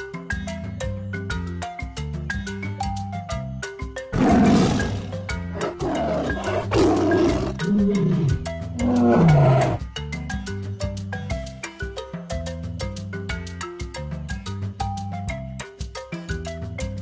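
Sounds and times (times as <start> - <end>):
light marimba music: 0.0 - 17.0
tiger roaring: 4.1 - 9.8.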